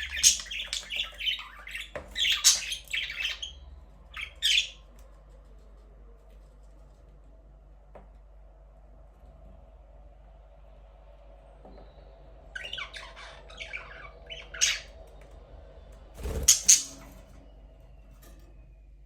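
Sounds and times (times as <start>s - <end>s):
budgerigars chirping: 0.0s - 3.6s, 12.6s - 14.9s, 16.2s - 17.1s
budgerigar squawks: 16.4s - 17.0s.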